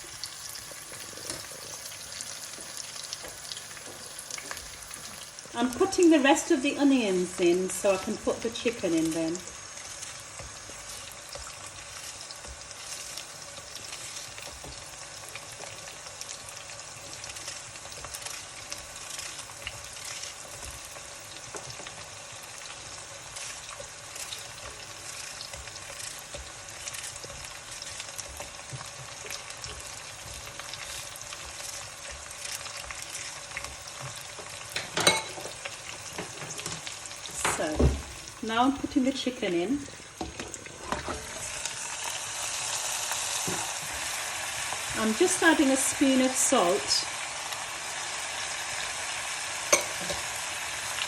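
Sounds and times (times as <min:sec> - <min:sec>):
onions sizzling in oil: 0:00.0 - 0:51.0.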